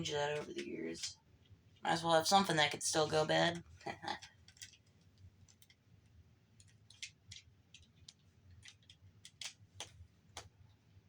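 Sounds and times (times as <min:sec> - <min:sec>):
small plastic parts clicking: 0:03.6 - 0:10.6.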